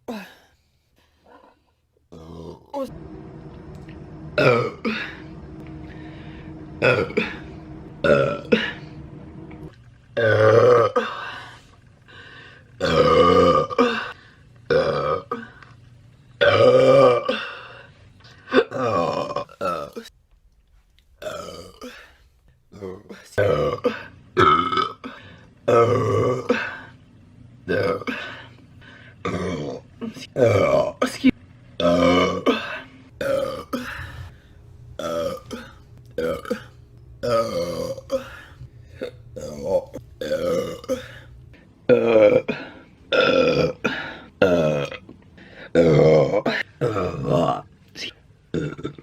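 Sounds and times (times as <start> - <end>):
woman burping: 4.4 - 5.2, 6.8 - 8.8, 10.2 - 11.3, 12.8 - 15.5, 16.4 - 17.6, 18.4 - 20.1, 21.2 - 22.2, 22.8 - 26.8, 27.7 - 28.3, 31.8 - 34.2, 35.0 - 41.3, 41.9 - 45.0, 45.8 - 47.7, 48.5 - 49.0.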